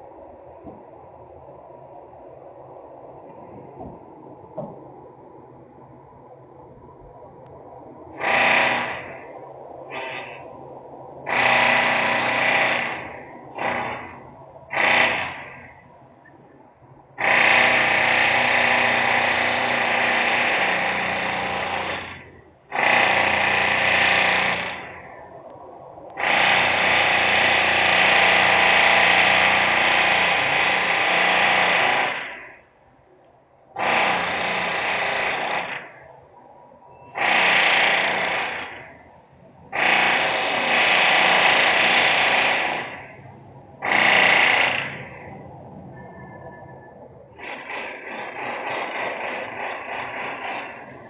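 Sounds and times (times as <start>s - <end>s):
loud power tool running: 8.2s - 9.3s, 9.9s - 10.4s, 11.3s - 15.8s, 17.2s - 25.1s, 26.2s - 32.5s, 33.8s - 36.0s, 37.2s - 38.9s, 39.8s - 43.2s, 43.8s - 45.4s, 47.4s - 51.0s.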